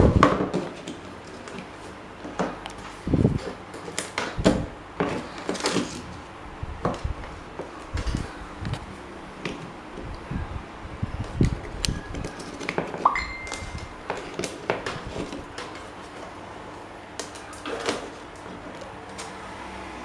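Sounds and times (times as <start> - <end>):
metallic ping: 13.1 - 14.0.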